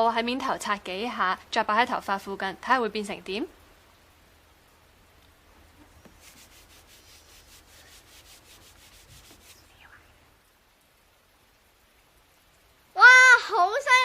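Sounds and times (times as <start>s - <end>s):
cloth rubbing on plastic ruler: 5.8s - 9.8s.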